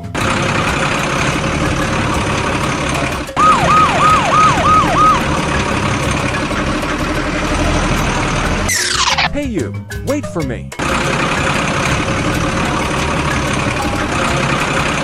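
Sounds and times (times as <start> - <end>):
engine rumble: 0.0 - 9.4, 10.8 - 15.0
siren-like falling tones: 3.4 - 6.1, 8.7 - 9.3.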